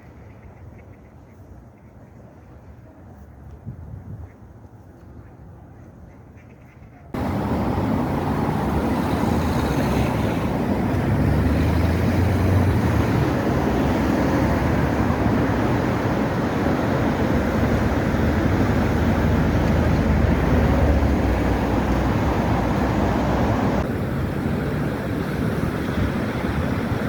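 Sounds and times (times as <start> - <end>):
street traffic rumble: 5.4 - 27.0.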